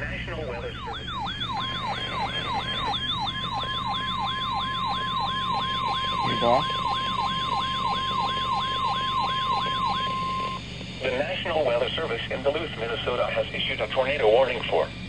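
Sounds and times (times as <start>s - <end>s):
steady high alarm tone: 0.0s - 11.2s
siren-like tone sweeping down: 0.4s - 10.6s.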